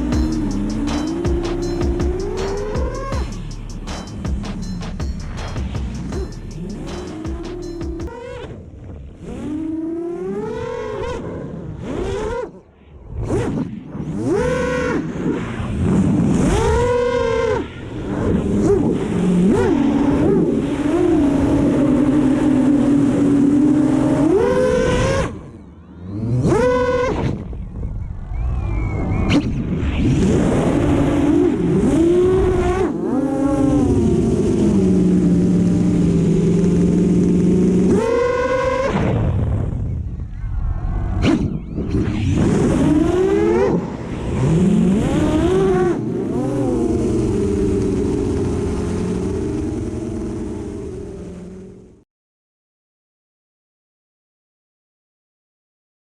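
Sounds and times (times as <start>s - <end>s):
quadcopter motors whining: 16.3s - 51.7s.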